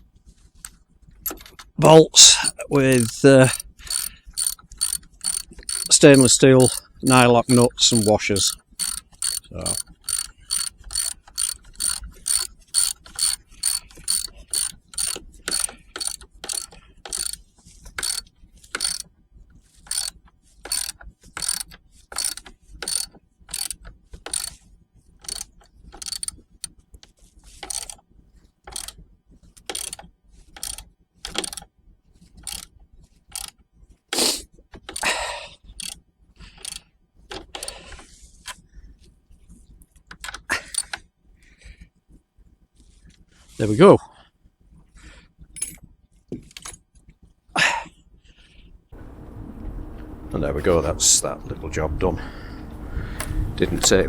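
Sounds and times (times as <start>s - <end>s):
ratchet wrench clicking: 1.3s - 17.4s, 18.0s - 19.1s, 19.9s - 24.6s, 25.2s - 26.4s, 27.6s - 28.0s, 28.7s - 28.9s, 29.6s - 30.0s, 30.6s - 31.6s, 32.4s - 32.7s, 33.3s - 33.5s, 34.2s - 35.1s, 36.6s - 36.8s, 40.2s - 41.0s, 53.2s - 54.0s
ratchet rasp: 1.3s - 19.1s, 19.8s - 24.6s, 25.2s - 26.4s, 27.5s - 28.0s, 28.7s - 29.0s, 29.6s - 31.6s, 32.4s - 32.7s, 33.3s - 33.5s, 34.2s - 36.0s, 36.6s - 37.8s, 40.6s - 41.0s.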